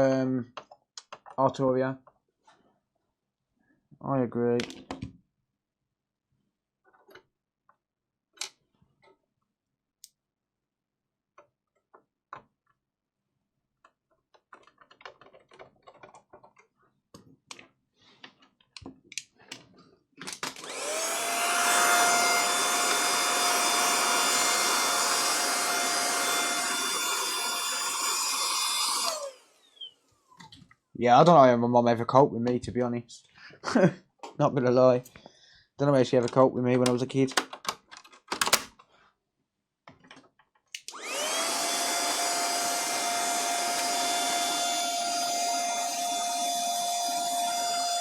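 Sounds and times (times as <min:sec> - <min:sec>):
electric fan motor whirring: 0:20.6 - 0:30.0, 0:40.9 - 0:48.0.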